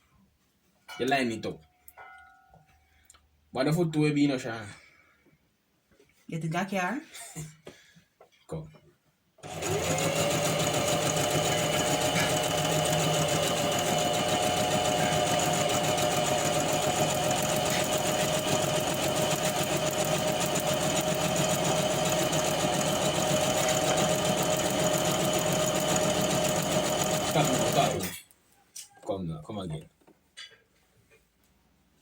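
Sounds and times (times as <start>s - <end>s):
sewing machine stitching: 9.4s - 28.2s.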